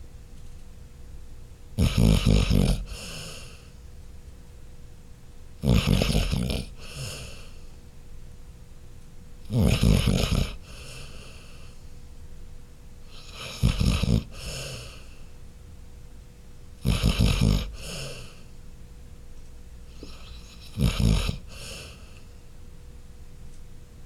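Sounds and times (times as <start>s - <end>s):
dog snoring: 1.8s - 3.7s, 5.6s - 7.7s, 9.4s - 11.8s, 13.0s - 15.2s, 16.8s - 18.5s, 19.9s - 22.3s
dog breathing softly: 10.4s - 12.0s, 13.2s - 15.4s, 17.6s - 18.6s, 20.0s - 22.4s.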